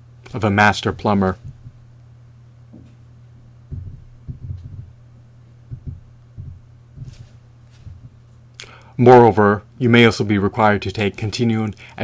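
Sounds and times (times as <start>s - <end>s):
low electrical hum: 0.0s - 12.0s
soft low thuds: 1.3s - 2.0s, 3.6s - 8.3s.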